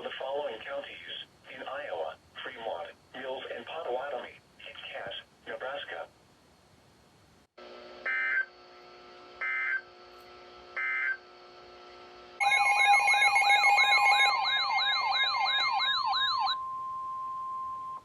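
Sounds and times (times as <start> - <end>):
siren-like alert sweeps: 12.4 - 16.8.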